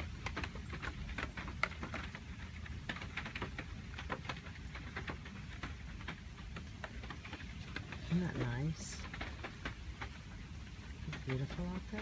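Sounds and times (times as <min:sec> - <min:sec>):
raindrops tapping and dripping: 0:00.0 - 0:12.0.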